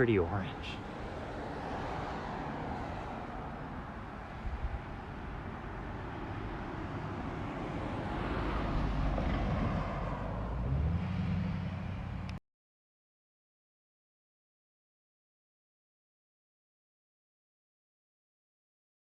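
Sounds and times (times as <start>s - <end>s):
low engine hum: 0.0s - 12.4s
wind rumbling on microphone: 2.8s - 11.0s.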